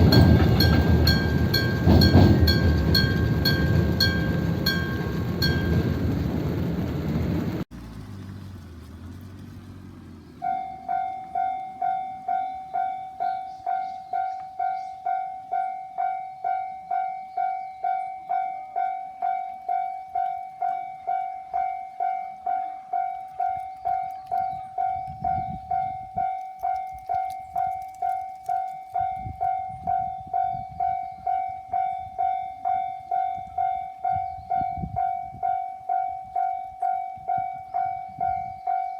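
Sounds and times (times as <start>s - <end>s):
level crossing warning bell: 0.0s - 6.6s, 10.4s - 26.8s, 28.7s - 38.9s
low rumbles: 0.0s - 10.8s
train passing: 0.0s - 17.0s.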